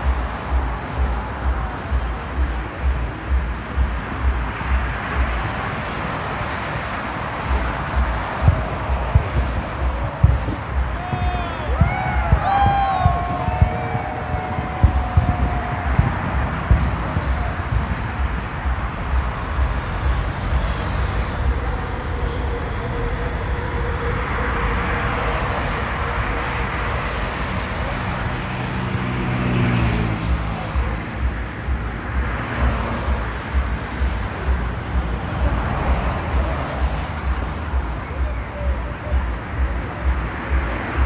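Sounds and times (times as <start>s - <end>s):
road traffic hum: 0.0s - 41.0s
wind buffeting microphone: 0.0s - 41.0s.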